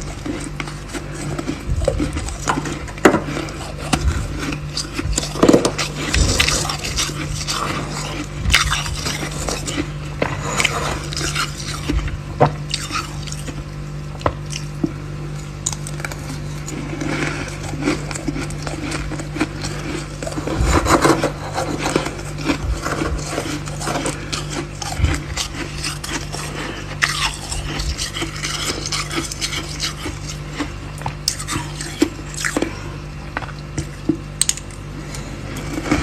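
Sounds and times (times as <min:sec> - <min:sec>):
frost being scraped: 0:00.0 - 0:12.1, 0:16.3 - 0:30.8
steady low hum: 0:00.0 - 0:36.0.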